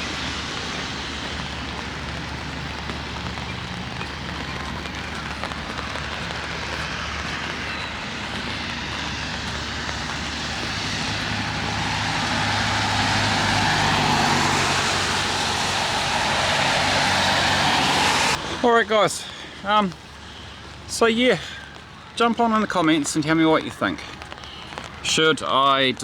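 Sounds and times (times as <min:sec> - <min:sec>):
vehicle engine rushing: 0:00.0 - 0:19.3.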